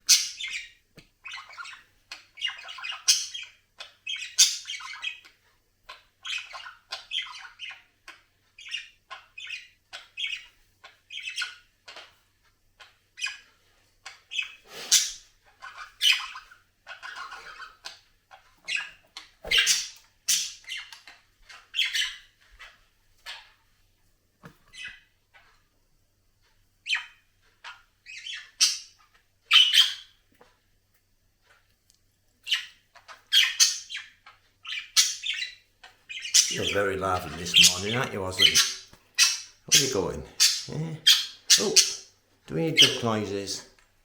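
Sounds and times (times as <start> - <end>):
budgerigar chattering: 0.1 - 0.7, 2.4 - 5.2, 14.3 - 16.4, 19.5 - 20.9, 28.1 - 30.1, 33.3 - 43.4.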